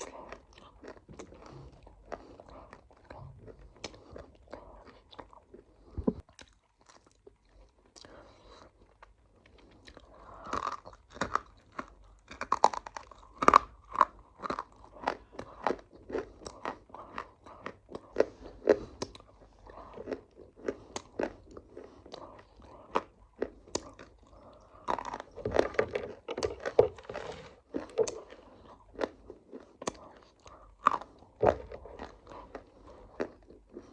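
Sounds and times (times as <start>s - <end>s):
person chewing crunchy food: 0.0s - 33.9s.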